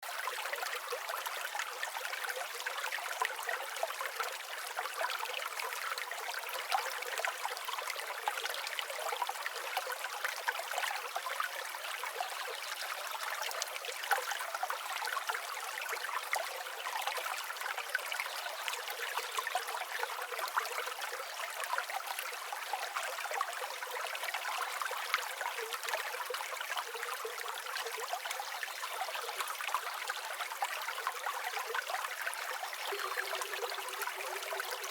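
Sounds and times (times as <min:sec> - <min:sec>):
stream water babbling: 0:00.0 - 0:34.9.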